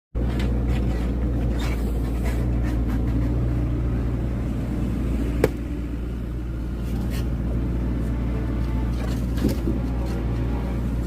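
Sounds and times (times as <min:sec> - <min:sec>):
axe striking firewood: 0:05.4 - 0:05.7.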